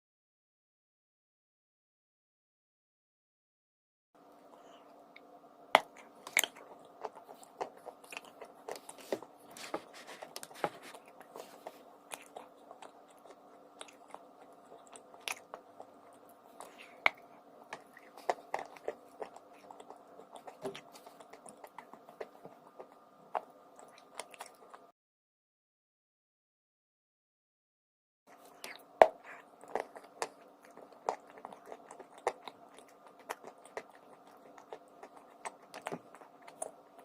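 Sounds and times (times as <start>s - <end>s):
background hum: 4.2s - 24.9s, 28.3s - 37.0s
person chewing crunchy mineral: 4.4s - 24.9s, 28.3s - 37.0s.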